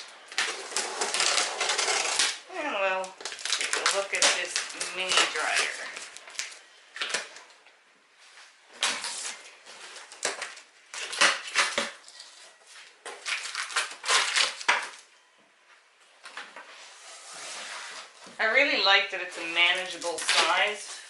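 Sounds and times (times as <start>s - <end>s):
cardboard box scraping and rustling: 0.4s - 2.4s, 16.7s - 18.2s.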